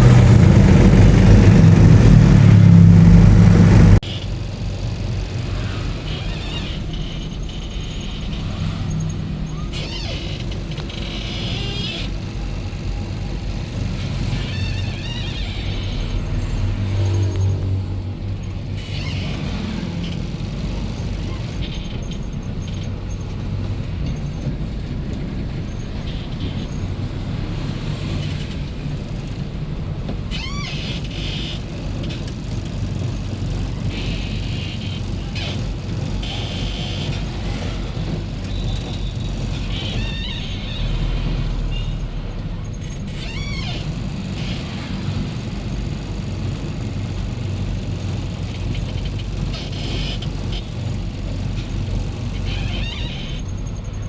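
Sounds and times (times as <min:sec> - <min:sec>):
vehicle engine running: 0:00.0 - 0:54.0
brief squeal: 0:05.6 - 0:12.2, 0:14.0 - 0:17.8, 0:21.0 - 0:28.6, 0:30.3 - 0:32.3, 0:33.9 - 0:44.9, 0:52.2 - 0:54.0.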